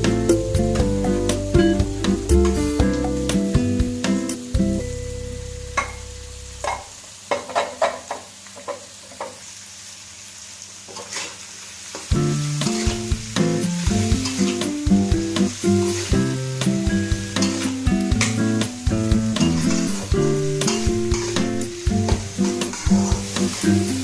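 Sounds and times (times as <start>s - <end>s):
background music: 0.0s - 6.3s, 12.2s - 24.0s
food sizzling: 0.0s - 24.0s
spatula scraping frying pan: 10.9s - 11.4s, 14.0s - 14.7s, 19.4s - 24.0s.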